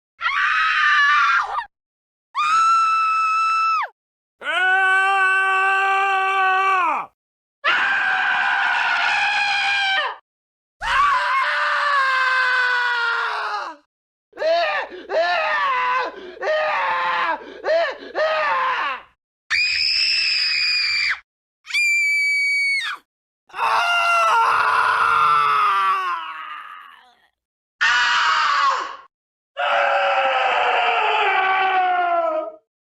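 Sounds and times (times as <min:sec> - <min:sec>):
screams: 0:02.4 - 0:10.2, 0:19.5 - 0:27.2, 0:27.8 - 0:32.6.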